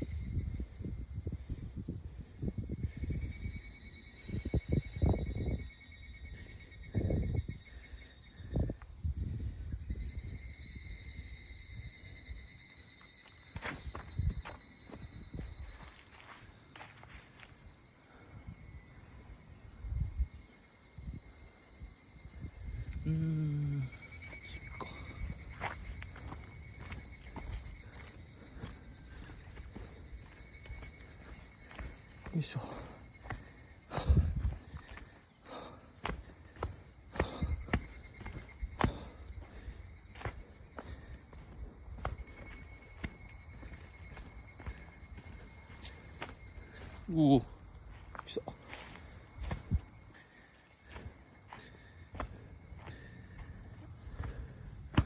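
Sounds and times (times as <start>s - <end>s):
high-pitched insect drone: 0.0s - 55.0s
dull footsteps on trail: 13.0s - 17.9s, 24.0s - 55.0s.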